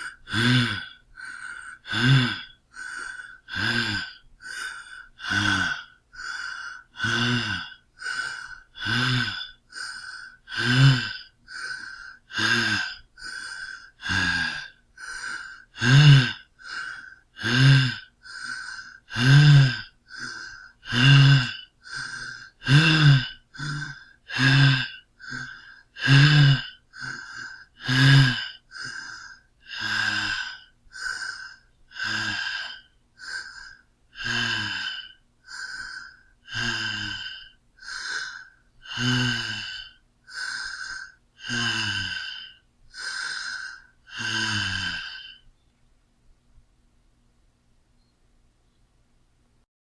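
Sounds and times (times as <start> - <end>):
man panting: 0.0 - 45.4.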